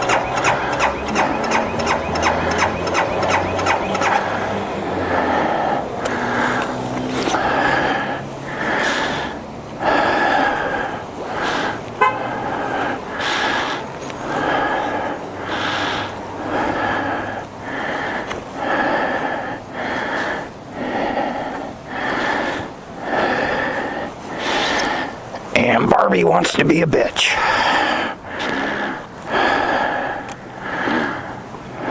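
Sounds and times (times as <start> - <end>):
sharp click: 0.0 - 4.2
starter motor cranking engine: 0.0 - 4.4.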